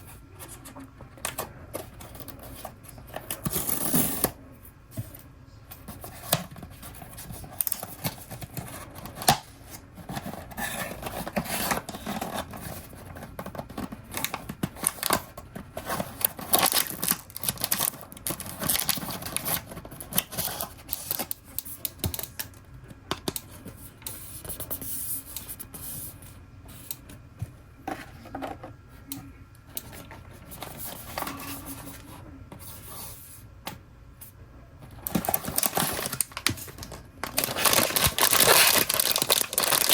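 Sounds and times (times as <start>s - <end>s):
packaging rustling: 6.1s - 22.4s, 35.0s - 39.9s.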